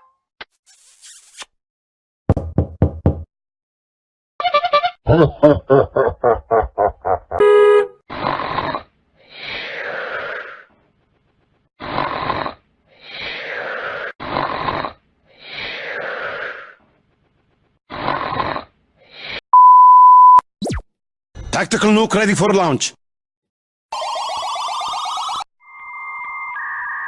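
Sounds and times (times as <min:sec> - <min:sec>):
horn-like tone: 0:07.4 - 0:08.0
noisy breath-like bursts: 0:09.2 - 0:10.7, 0:12.9 - 0:14.2, 0:15.3 - 0:16.8.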